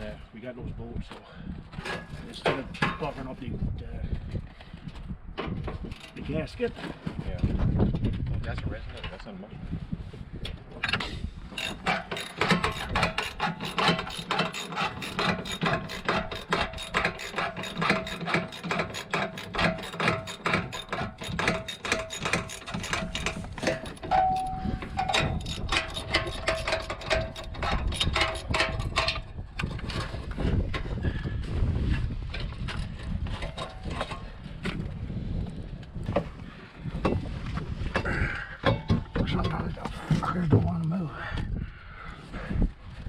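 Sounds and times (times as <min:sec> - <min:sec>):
ratchet wrench clicking: 0:11.6 - 0:29.1.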